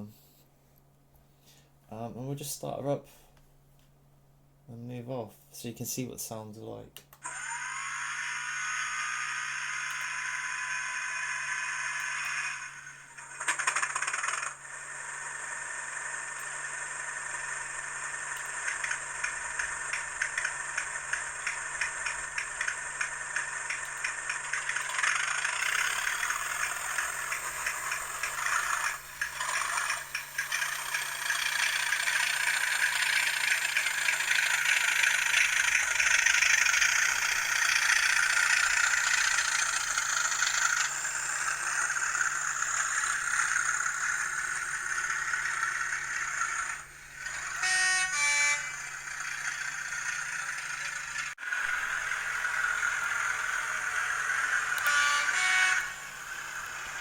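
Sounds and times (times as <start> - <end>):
diesel engine sounds from tiny speaker: 9.6 - 57.0
short train horn: 47.5 - 48.8, 54.8 - 56.1.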